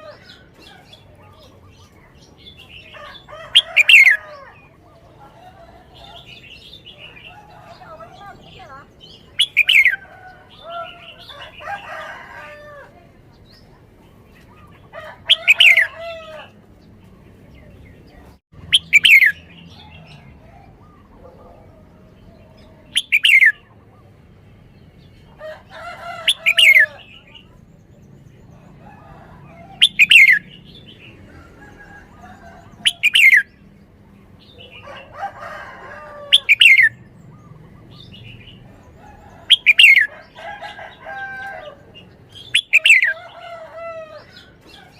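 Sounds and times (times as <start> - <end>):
bird chattering: 0.0 - 12.6, 14.6 - 16.2, 18.6 - 20.0, 22.5 - 24.1, 29.8 - 30.5, 32.6 - 33.5, 36.3 - 40.1, 42.0 - 43.2.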